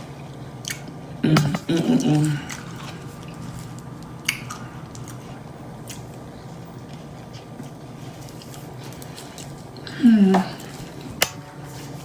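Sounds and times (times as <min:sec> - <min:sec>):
person chewing food: 0:00.0 - 0:12.0
steady low hum: 0:00.0 - 0:12.0
wet mouth smacks: 0:04.2 - 0:05.1.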